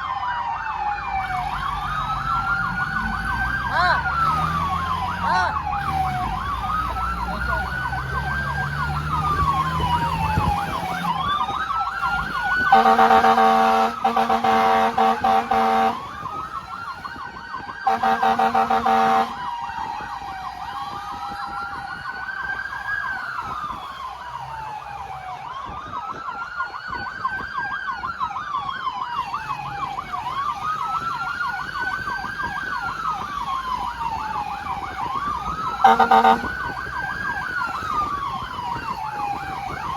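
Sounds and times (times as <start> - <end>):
wailing siren: 0.0 - 39.9
warbling siren: 0.0 - 39.9
loud horn blasts: 12.7 - 16.1, 17.9 - 19.4, 35.8 - 36.6.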